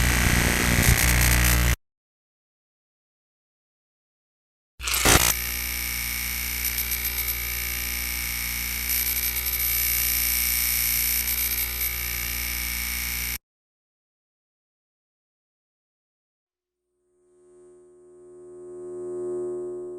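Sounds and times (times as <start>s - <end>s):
electronic sci-fi drone: 0.0s - 1.8s, 17.2s - 19.9s.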